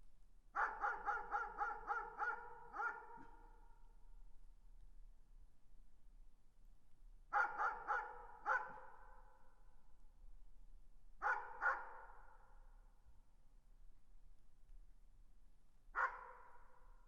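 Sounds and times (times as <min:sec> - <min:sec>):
dog barking with echo: 0:00.6 - 0:03.4, 0:07.3 - 0:09.0, 0:11.2 - 0:12.2, 0:16.0 - 0:16.6.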